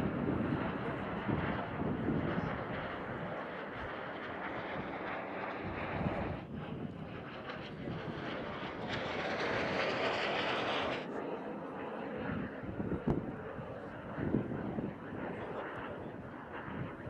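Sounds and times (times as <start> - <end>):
jet aircraft rushing whine: 0.0 - 17.0.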